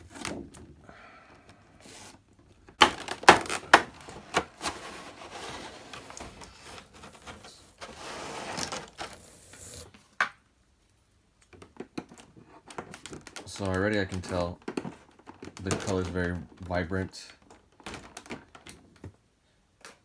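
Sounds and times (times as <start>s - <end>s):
cardboard box snapping: 2.8s - 7.9s
packaging scraping and rustling: 2.8s - 10.0s.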